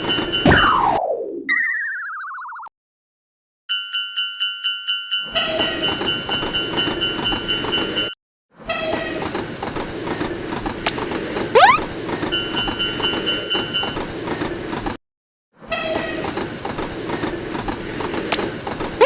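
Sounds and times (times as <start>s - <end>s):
train rumble and wheel clatter: 5.4s - 8.1s, 8.7s - 15.0s, 15.7s - 19.0s.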